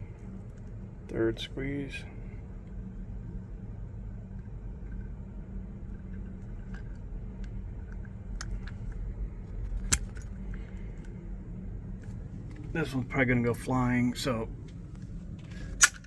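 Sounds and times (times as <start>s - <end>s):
steady low hum: 0.0s - 16.0s
rivet tool metallic clicks: 15.8s - 16.0s.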